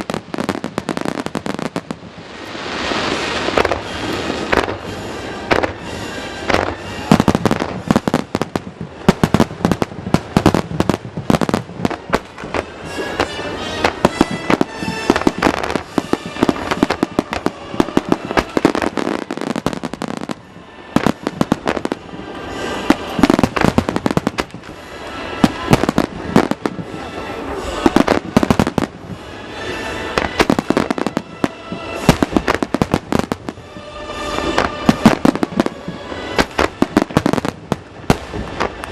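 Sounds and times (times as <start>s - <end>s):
fireworks bursting and crackling: 0.0s - 38.9s.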